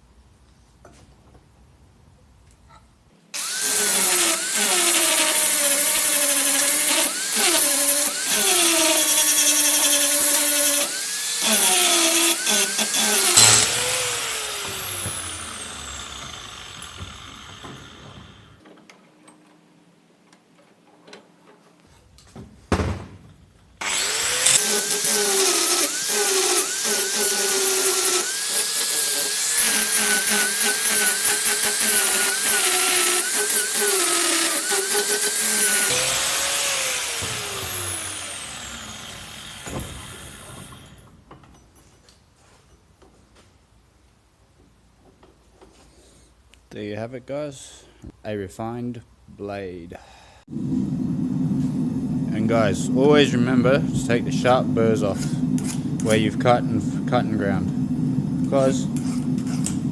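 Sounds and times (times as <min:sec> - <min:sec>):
angle grinder grinding steel: 0:03.4 - 0:18.6, 0:23.8 - 0:41.0
grinder spinning down whine: 0:03.4 - 0:18.6, 0:23.8 - 0:40.9.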